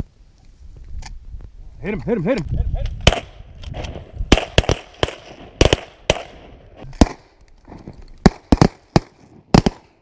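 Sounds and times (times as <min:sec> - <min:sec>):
shotgun shots: 0:03.0 - 0:07.3, 0:08.2 - 0:10.0.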